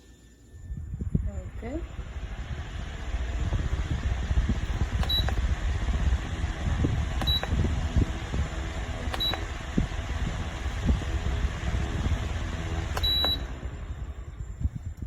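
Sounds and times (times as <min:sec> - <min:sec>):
pedestal fan running: 0:00.2 - 0:15.0
short high beeps: 0:13.0 - 0:13.4.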